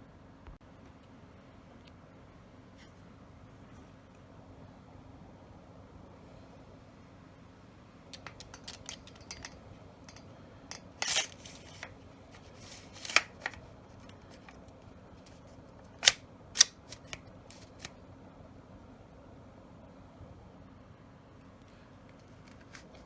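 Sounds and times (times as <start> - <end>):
light clicks and sliding scrapes: 8.2 - 14.6, 15.2 - 17.9, 21.6 - 23.0.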